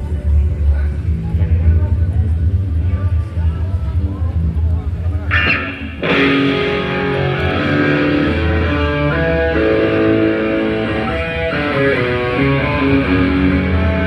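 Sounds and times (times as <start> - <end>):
amplified electric guitar chords: 4.0 - 14.0.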